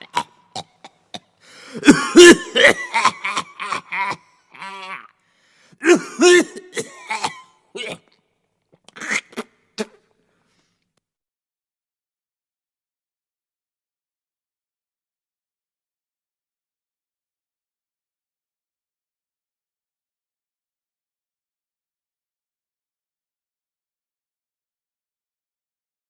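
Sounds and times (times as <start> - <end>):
person spitting: 0.0 - 3.1, 7.8 - 10.1
throat clearing: 0.0 - 4.2, 5.8 - 8.2
person coughing: 0.0 - 5.0, 5.8 - 8.1.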